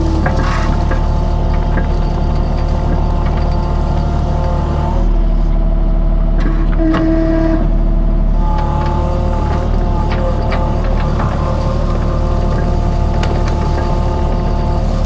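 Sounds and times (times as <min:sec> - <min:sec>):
metallic clanks: 0:00.0 - 0:04.9
skid steer engine running: 0:00.0 - 0:15.0.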